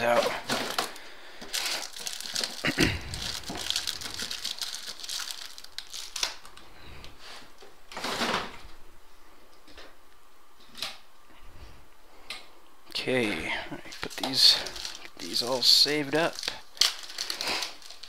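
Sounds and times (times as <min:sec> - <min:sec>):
plastic crinkling and rustling: 0:00.0 - 0:08.7, 0:13.2 - 0:18.0.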